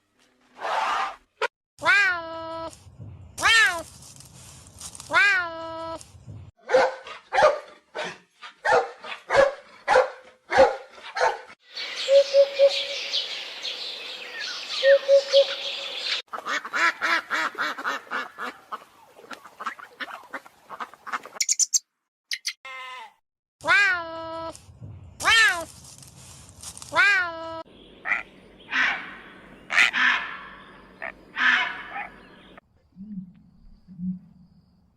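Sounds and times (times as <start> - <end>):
high chirps: 21.4 - 22.6
animal calls: 28.0 - 32.4.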